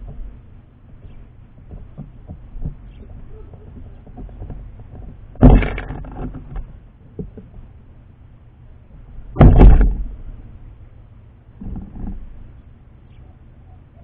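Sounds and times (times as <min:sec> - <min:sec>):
bird landing thump: 0:05.4 - 0:06.3, 0:09.4 - 0:10.2.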